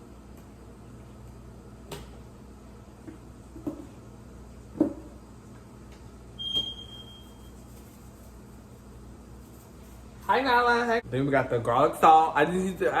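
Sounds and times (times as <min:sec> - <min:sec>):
high-pitched electronic beep: 0:06.4 - 0:07.4.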